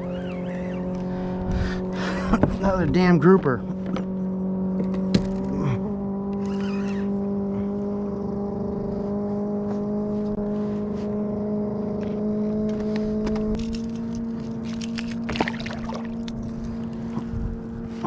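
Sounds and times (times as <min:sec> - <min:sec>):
motor humming: 0:03.7 - 0:07.7.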